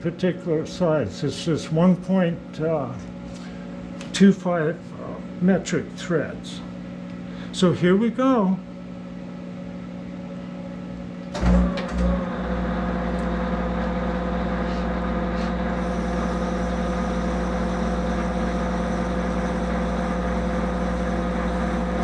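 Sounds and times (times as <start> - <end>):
lathe drive humming and whining: 9.8 - 22.0.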